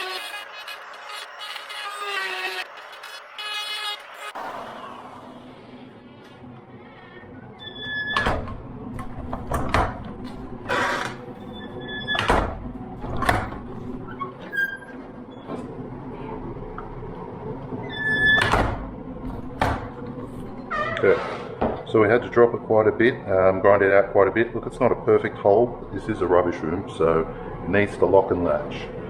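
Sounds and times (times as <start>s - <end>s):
short door squeak: 0.0s - 4.4s, 7.6s - 8.5s, 10.7s - 12.5s, 14.1s - 15.5s, 17.8s - 18.8s, 20.7s - 21.5s
heavy door banging shut: 8.1s - 11.2s, 12.1s - 13.7s, 18.4s - 20.0s.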